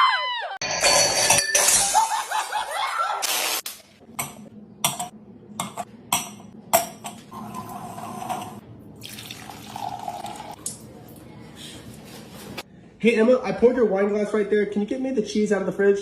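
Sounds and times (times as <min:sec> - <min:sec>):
dishes clinking and knocking: 0:04.1 - 0:08.6.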